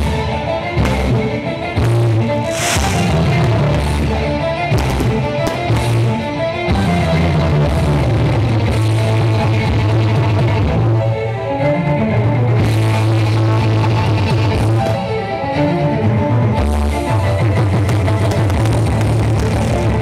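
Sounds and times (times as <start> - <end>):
loud rock music: 0.0 - 20.0.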